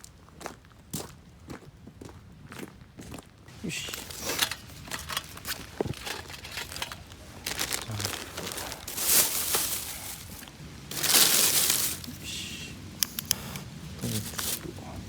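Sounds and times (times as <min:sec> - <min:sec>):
crinkling and rustling: 0:03.5 - 0:15.0.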